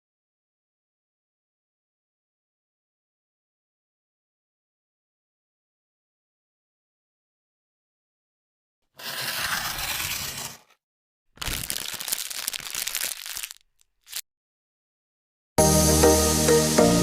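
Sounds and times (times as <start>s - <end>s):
packaging tearing and crinkling: 11.4s - 14.2s.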